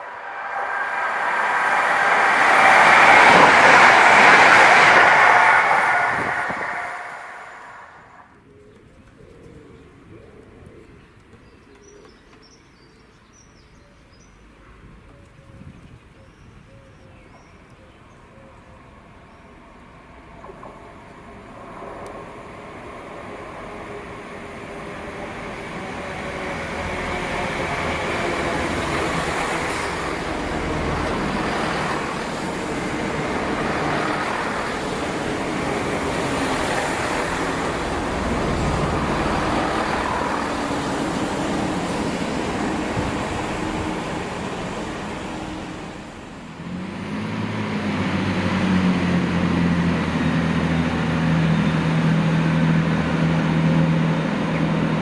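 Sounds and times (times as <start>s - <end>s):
diesel engine humming: 0.0s - 8.2s, 20.1s - 55.0s
train rushing past: 0.0s - 8.4s, 18.9s - 55.0s.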